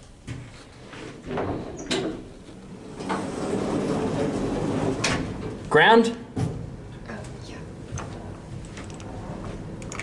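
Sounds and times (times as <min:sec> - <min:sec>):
lift doors sliding open: 0:00.8 - 0:05.6, 0:08.1 - 0:09.8.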